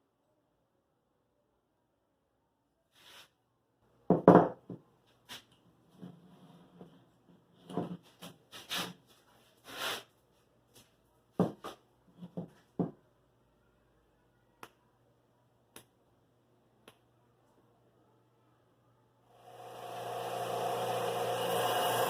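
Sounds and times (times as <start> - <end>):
rubbing and rustling: 7.6 - 10.1.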